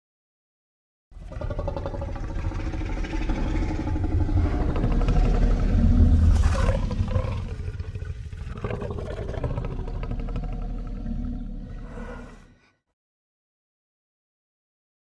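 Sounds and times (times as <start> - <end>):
deep monster roar: 1.2 - 12.8.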